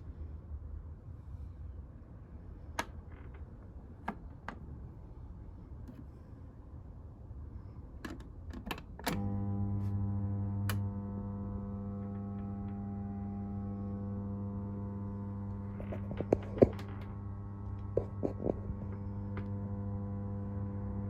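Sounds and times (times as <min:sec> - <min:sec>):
dryer motor humming: 0:07.6 - 0:21.0
tumble dryer switch clicks: 0:10.5 - 0:11.1.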